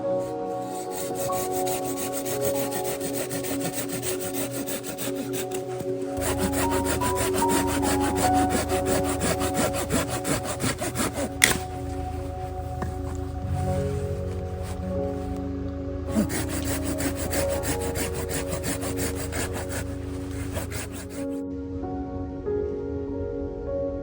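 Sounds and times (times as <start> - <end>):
hand saw cutting wood: 0.0 - 15.4, 16.1 - 21.4
wood cracking: 1.8 - 15.5.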